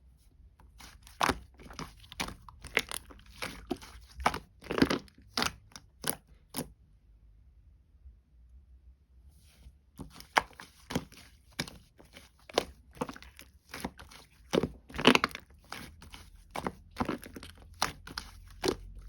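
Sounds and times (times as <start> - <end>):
slime popping and crackling: 0.8 - 6.2, 12.3 - 19.0.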